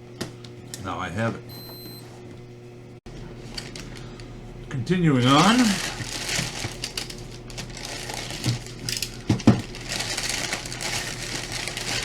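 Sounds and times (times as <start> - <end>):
packaging crinkling and rustling: 3.3 - 4.3, 5.1 - 12.0.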